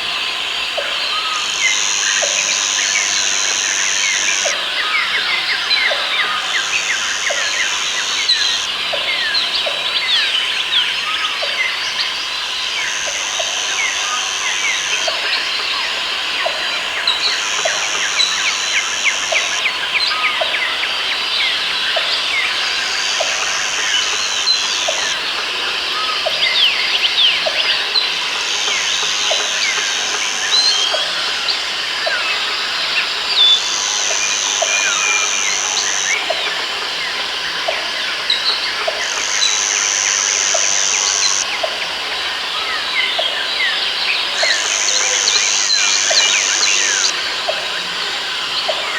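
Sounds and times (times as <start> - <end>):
high insect buzz: 0.1 - 9.4, 12.0 - 41.5, 44.1 - 47.2
birds chirping and calling: 38.3 - 41.5.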